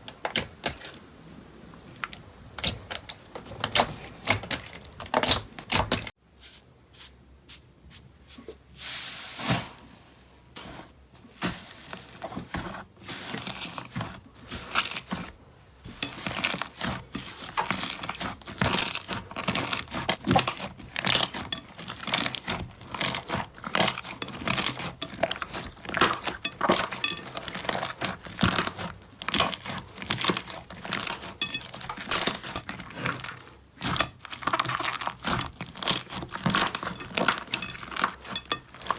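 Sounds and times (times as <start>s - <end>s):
slime squishing with crackles: 10.4s - 38.9s.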